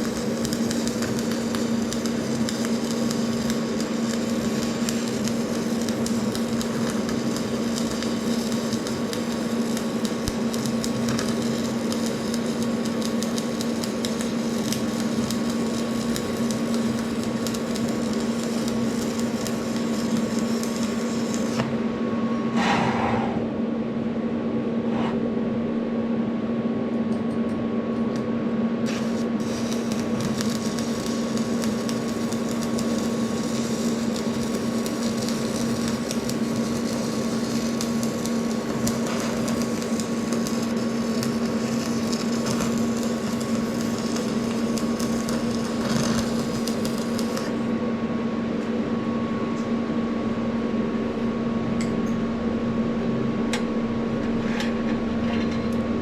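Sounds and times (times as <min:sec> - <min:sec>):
crackling welding arc: 0:00.0 - 0:21.6, 0:28.8 - 0:47.6
welder humming: 0:00.0 - 0:22.8, 0:28.8 - 0:47.8.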